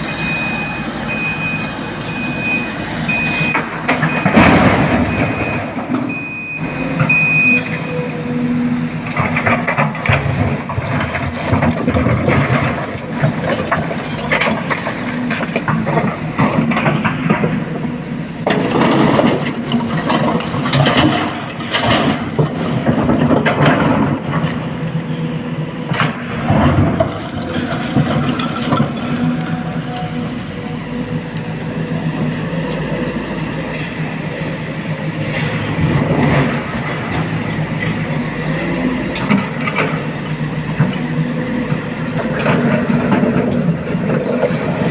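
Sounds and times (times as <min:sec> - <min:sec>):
reversing beeper: 0:00.0 - 0:08.8
heavy diesel machinery running: 0:00.0 - 0:44.9
loud clattering and rattling: 0:09.2 - 0:30.2.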